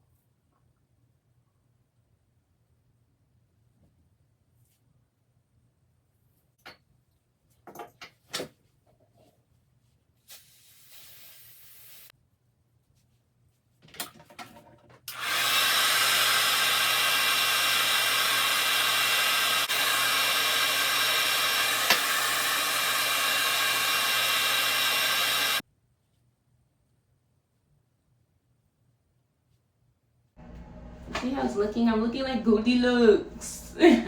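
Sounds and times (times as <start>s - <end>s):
hair dryer running: 15.1s - 25.6s, 30.4s - 34.0s.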